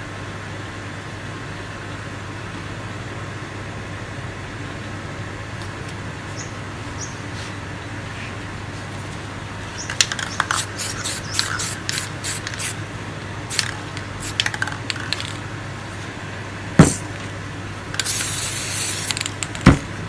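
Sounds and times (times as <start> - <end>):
spray paint can hissing: 9.8 - 12.9, 13.5 - 15.5, 16.8 - 17.3, 17.9 - 19.8
sharp knocks: 16.8 - 17.1, 19.6 - 19.9.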